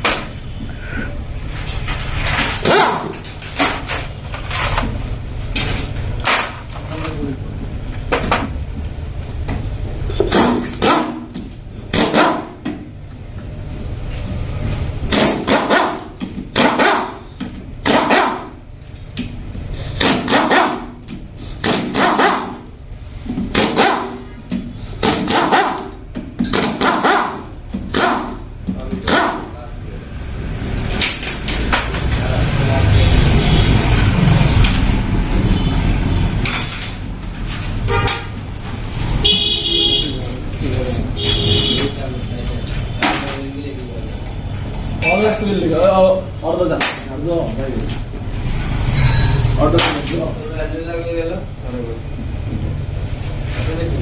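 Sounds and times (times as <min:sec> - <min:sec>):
traffic rumble: 0:00.0 - 0:54.0
dog barking: 0:02.6 - 0:03.2, 0:18.0 - 0:18.5, 0:22.0 - 0:22.5, 0:27.0 - 0:27.4
vehicle horn honk: 0:37.8 - 0:38.4, 0:39.2 - 0:40.4, 0:41.1 - 0:42.2.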